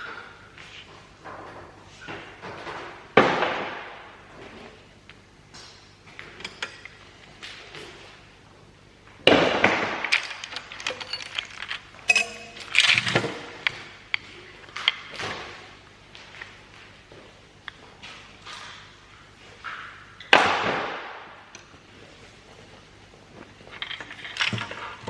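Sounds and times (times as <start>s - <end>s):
metal tools clinking: 10.1s - 13.4s.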